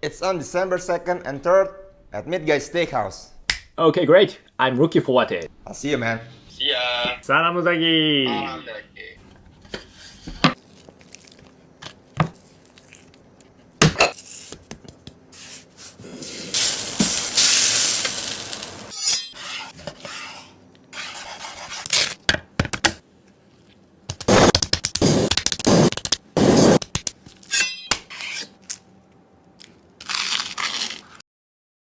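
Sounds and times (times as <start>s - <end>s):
sizzling hiss: 15.4s - 19.0s.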